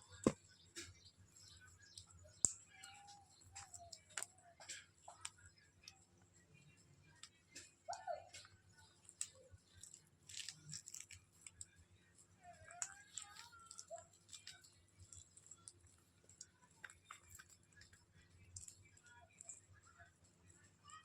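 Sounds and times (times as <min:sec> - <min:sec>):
parrots cracking food with beaks: 0:01.9 - 0:06.0, 0:07.2 - 0:19.8.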